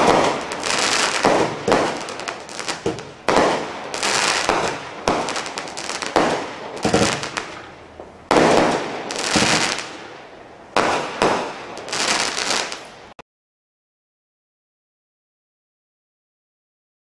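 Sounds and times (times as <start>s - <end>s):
firework crackling: 0.0s - 13.2s
firework shell bursts: 8.4s - 9.9s.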